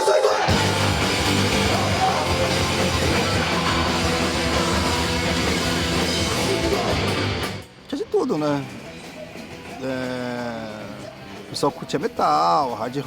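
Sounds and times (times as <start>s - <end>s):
punk rock band playing: 0.0s - 7.8s, 8.6s - 13.0s
distorted electric guitar: 0.3s - 7.9s.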